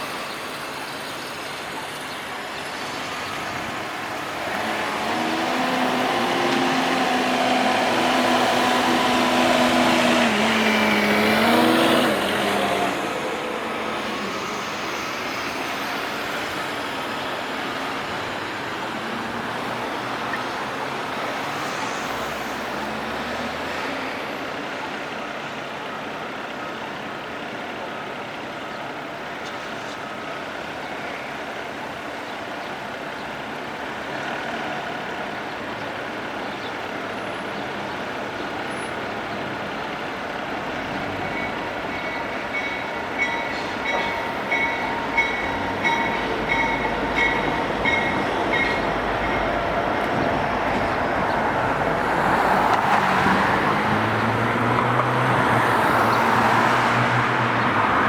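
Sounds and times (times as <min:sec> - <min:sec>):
street traffic hum: 0:00.0 - 0:58.0
large vehicle passing close: 0:02.4 - 0:24.7, 0:40.3 - 0:58.0.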